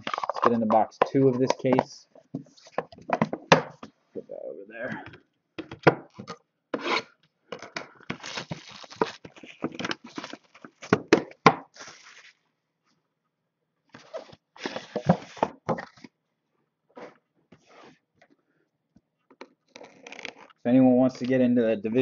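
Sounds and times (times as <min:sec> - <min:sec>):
cards and box handling: 0:00.0 - 0:03.5, 0:06.1 - 0:12.4.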